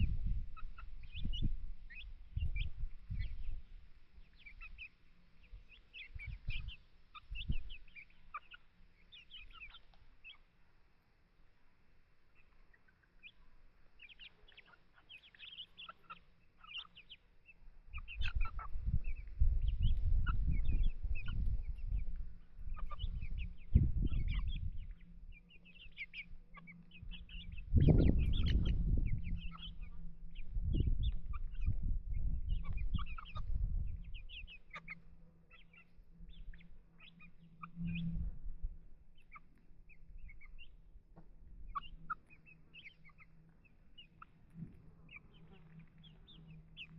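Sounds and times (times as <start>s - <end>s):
chickens clucking: 0.0s - 3.6s, 4.2s - 10.5s, 12.3s - 17.3s, 17.9s - 38.2s, 41.6s - 46.9s
loud low rumble: 26.9s - 34.5s.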